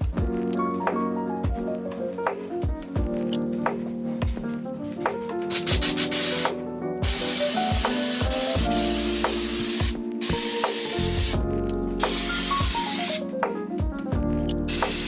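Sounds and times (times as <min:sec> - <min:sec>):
background music: 0:00.0 - 0:15.0
spray gun hissing: 0:05.5 - 0:11.4, 0:12.0 - 0:13.2, 0:14.7 - 0:15.0.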